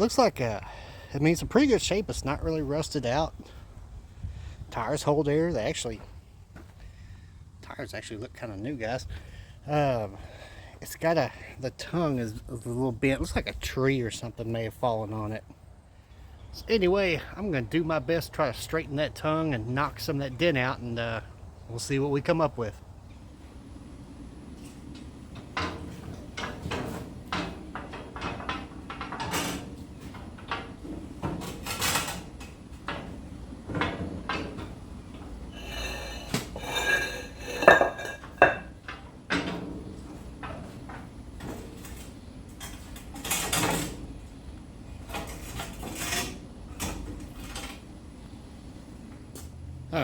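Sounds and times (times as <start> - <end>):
metal parts clanking: 25.5 - 39.8, 40.4 - 44.0
ringing metallic clatter: 35.6 - 39.6.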